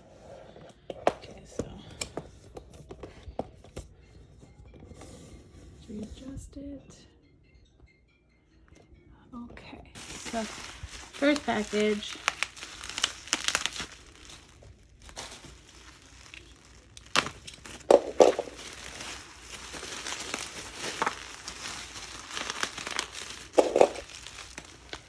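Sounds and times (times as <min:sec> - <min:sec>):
packaging clicks: 0:10.0 - 0:25.0
packaging crackling bursts: 0:10.0 - 0:25.0
plastic and paper crinkling: 0:10.0 - 0:25.0.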